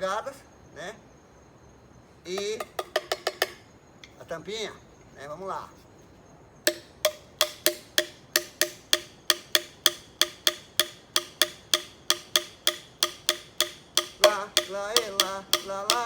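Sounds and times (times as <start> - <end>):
cap knocking on plastic pipe: 2.4 - 3.6, 6.7 - 16.0.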